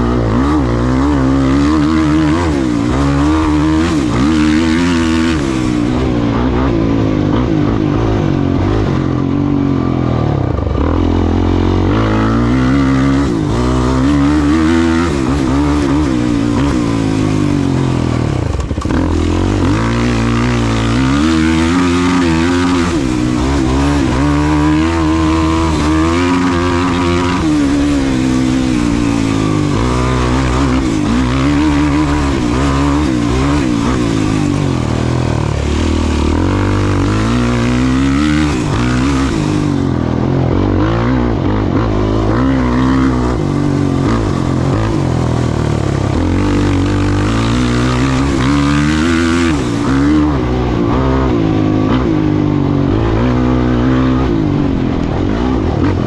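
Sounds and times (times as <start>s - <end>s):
race vehicle engine revving: 0.0s - 56.0s.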